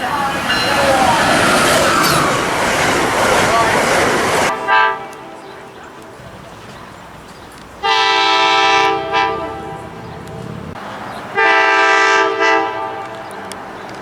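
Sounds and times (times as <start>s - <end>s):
train rumbling: 0.0s - 14.0s
locomotive air horn: 4.5s - 5.9s, 7.8s - 10.6s, 11.3s - 13.5s.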